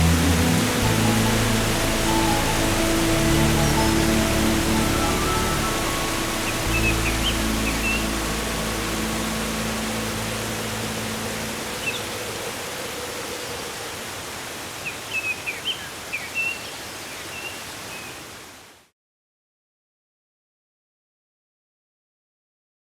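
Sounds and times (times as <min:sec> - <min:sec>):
background music: 0:00.0 - 0:12.1
birds chirping: 0:00.0 - 0:18.4
waterfall rushing: 0:00.0 - 0:18.9.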